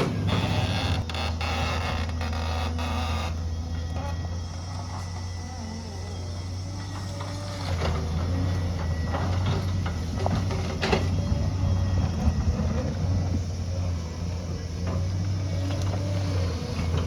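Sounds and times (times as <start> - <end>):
diesel earthmoving machine running: 0.0 - 17.0.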